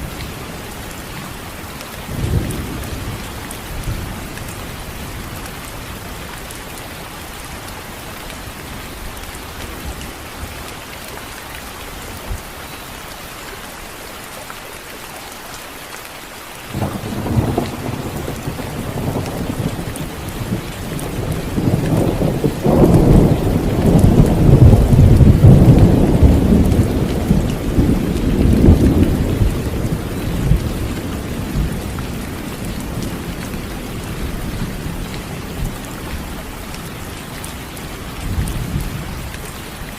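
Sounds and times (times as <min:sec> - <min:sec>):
steady rain: 0:00.0 - 0:39.9
thunder rumbling: 0:16.7 - 0:35.9.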